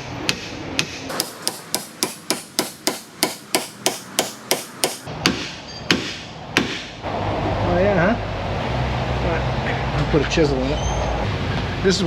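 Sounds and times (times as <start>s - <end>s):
hammer striking metal: 0.0s - 7.0s.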